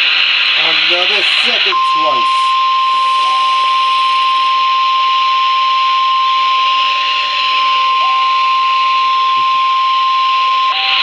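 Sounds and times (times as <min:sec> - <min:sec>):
radio hiss: 0:00.5 - 0:04.6
steady high alert tone: 0:00.8 - 0:04.7.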